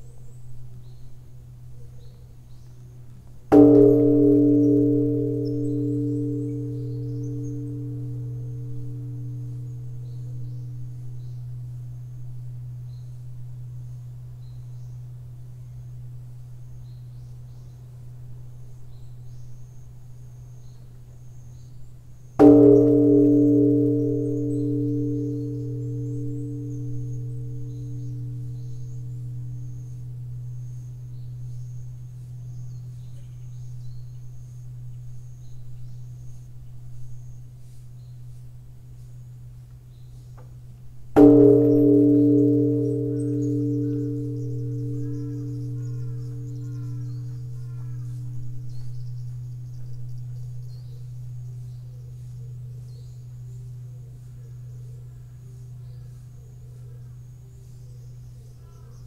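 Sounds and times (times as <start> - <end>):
temple bell humming: 3.4 - 40.0, 40.6 - 59.0
faint high chirping: 41.2 - 59.0.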